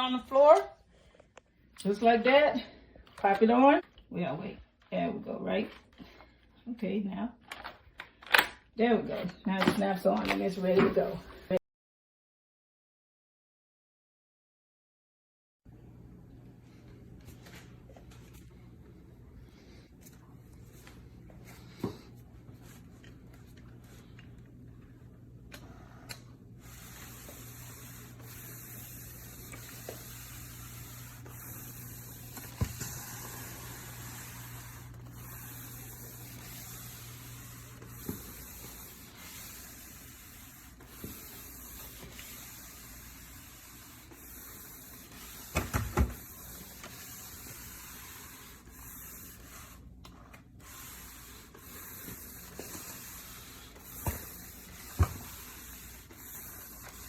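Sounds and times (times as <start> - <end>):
vacuum mop whirring: 20.0 - 57.0.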